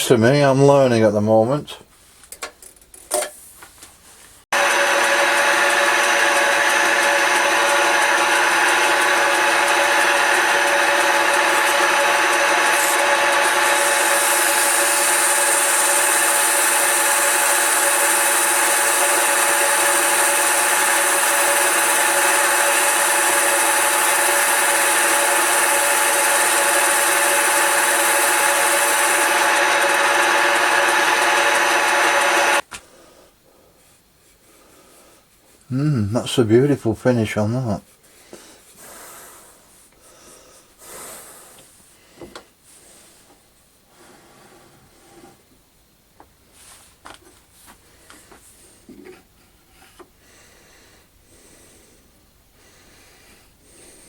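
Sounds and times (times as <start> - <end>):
lathe running with hum: 4.6 - 32.6
sandpaper hissing on spinning wood: 6.2 - 32.6.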